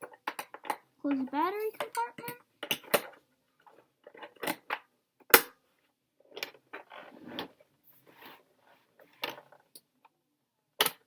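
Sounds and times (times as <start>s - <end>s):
plastic rattling and scraping: 0.0s - 4.9s, 6.3s - 9.7s.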